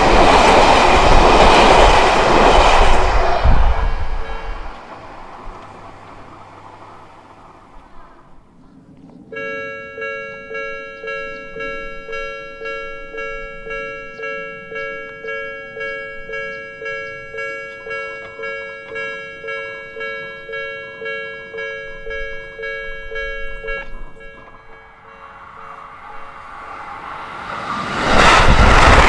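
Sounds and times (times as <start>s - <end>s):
low rumble of train: 0.0s - 29.0s
level-crossing warning bell: 9.2s - 28.4s.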